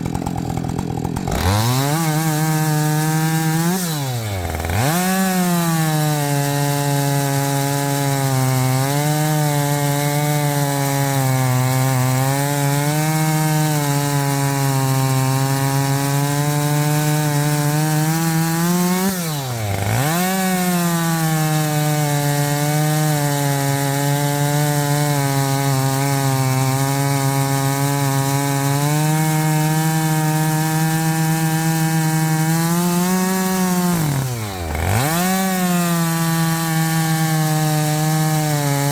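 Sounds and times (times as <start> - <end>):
chainsaw cutting through log: 0.0 - 38.9.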